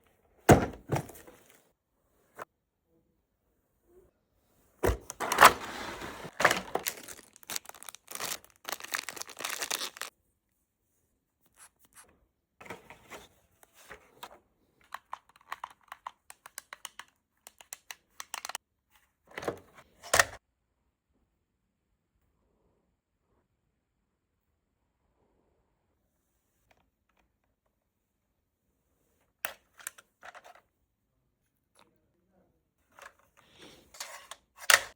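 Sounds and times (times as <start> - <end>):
packaging rustling and tearing: 4.9 - 10.1.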